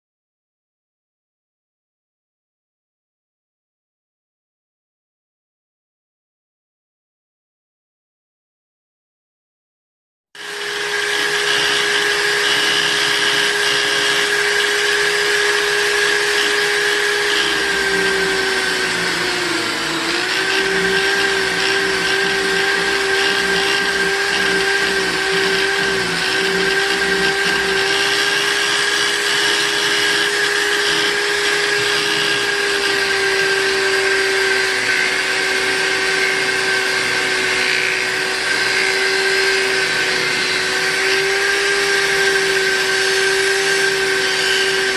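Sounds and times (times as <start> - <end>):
buffing machine motor whine: 10.4 - 44.9.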